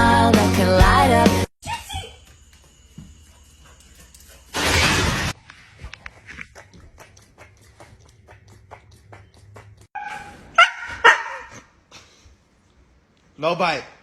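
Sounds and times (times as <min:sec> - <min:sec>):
dog barking sharply: 0:10.0 - 0:11.6.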